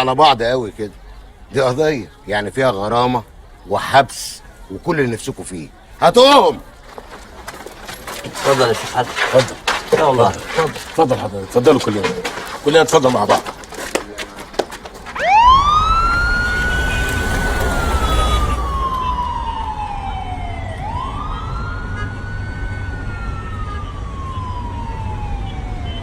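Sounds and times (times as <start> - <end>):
moving vehicle rumble: 3.2 - 26.0
police siren wailing: 15.1 - 26.0.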